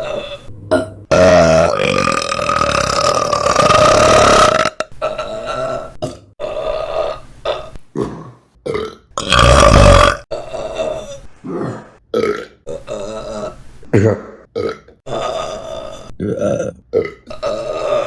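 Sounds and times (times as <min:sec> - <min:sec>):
woman burping: 0:00.0 - 0:06.3.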